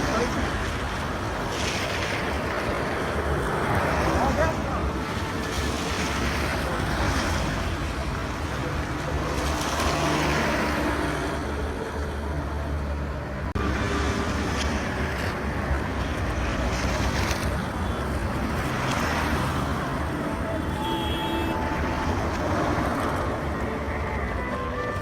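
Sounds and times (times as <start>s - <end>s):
road traffic going by: 0.0s - 25.0s
wind rumble on microphone: 0.0s - 25.0s.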